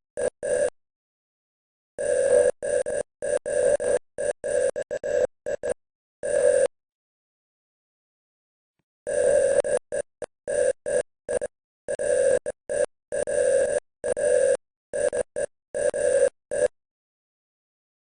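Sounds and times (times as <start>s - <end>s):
morse code beeps: 2.0s - 6.7s, 9.1s - 16.7s.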